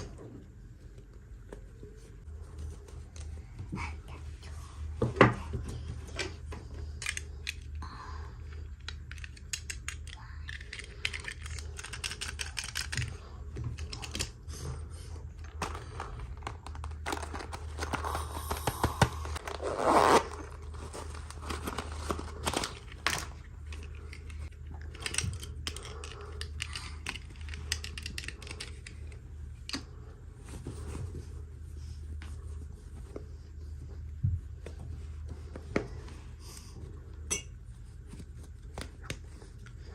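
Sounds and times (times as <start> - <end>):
packaging rustling and clicking: 15.4 - 29.0.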